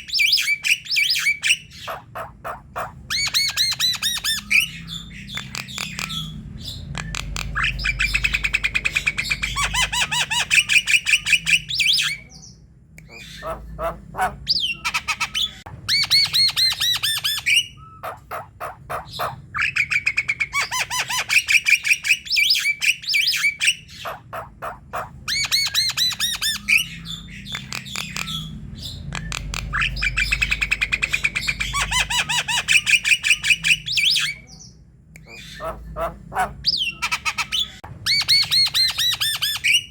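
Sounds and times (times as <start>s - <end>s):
bird harsh chattering song: 0.0s - 39.9s.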